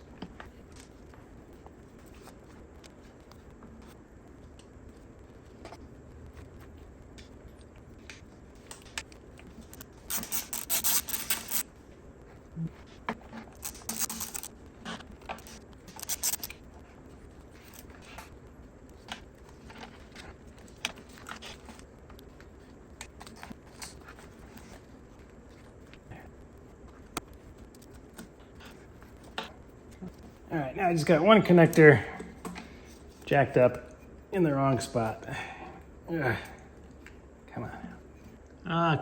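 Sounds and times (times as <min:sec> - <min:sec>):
scraping and rustling: 0:04.6 - 0:30.5.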